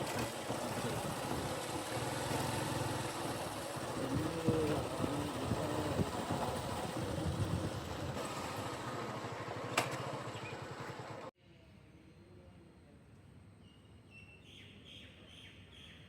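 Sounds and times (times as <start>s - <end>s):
heavy diesel engine running: 0.0s - 11.3s
faint outdoor ambience: 0.0s - 16.0s.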